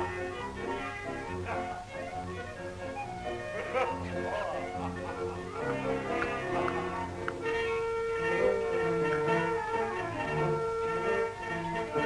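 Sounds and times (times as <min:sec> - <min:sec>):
cartoon soundtrack music: 0:00.0 - 0:12.0.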